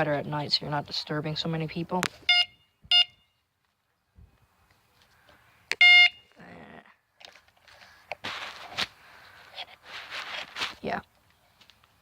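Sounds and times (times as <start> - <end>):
electronic bicycle horn beeps: 2.3 - 3.4, 5.8 - 6.3
handling rustle: 7.2 - 12.0.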